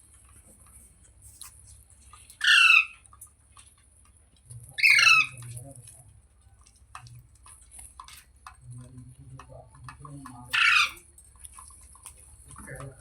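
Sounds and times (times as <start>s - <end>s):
parrot squawking: 2.4s - 3.0s, 4.8s - 5.4s, 10.5s - 11.0s.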